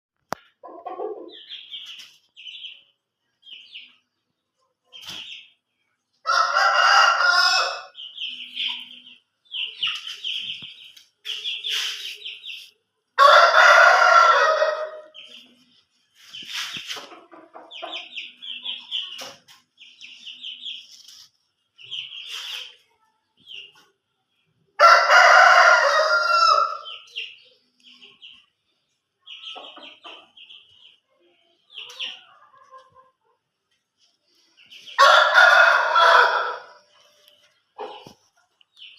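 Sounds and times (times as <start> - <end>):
chicks peeping: 0.2 - 38.9
rooster crowing: 6.3 - 7.9, 13.2 - 15.0, 24.8 - 26.8, 35.0 - 36.8.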